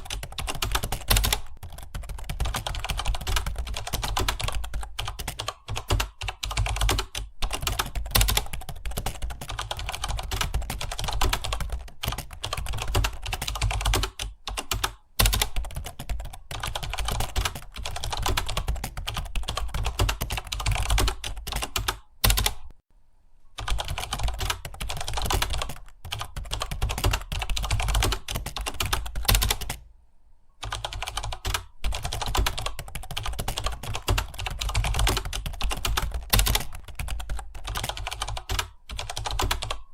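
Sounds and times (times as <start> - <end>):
rapid keyboard typing: 0.0 - 22.8, 23.6 - 29.9, 30.6 - 39.9.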